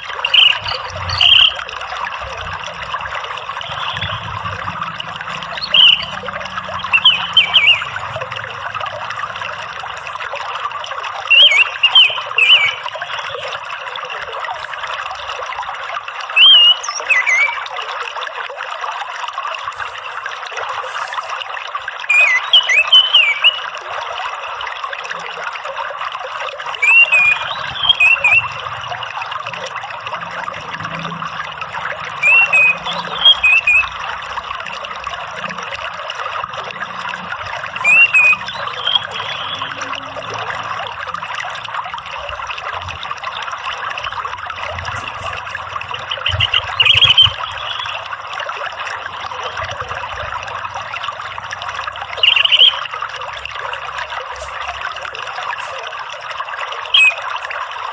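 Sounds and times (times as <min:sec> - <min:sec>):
thrush singing whistled phrases: 0:00.0 - 0:01.7, 0:03.2 - 0:08.8, 0:11.3 - 0:13.6, 0:16.4 - 0:17.7, 0:22.1 - 0:23.8, 0:26.6 - 0:28.7, 0:32.2 - 0:34.1, 0:37.7 - 0:40.1, 0:44.0 - 0:48.1, 0:52.2 - 0:52.9, 0:56.8 - 0:57.6
trickle of running water: 0:00.0 - 0:57.9.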